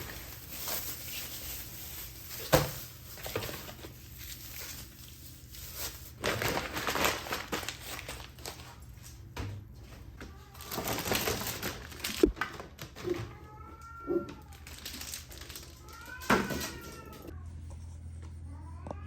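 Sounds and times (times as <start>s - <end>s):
rustling: 0.0s - 9.0s
cat meowing: 13.0s - 14.8s, 15.6s - 17.4s, 18.5s - 19.0s.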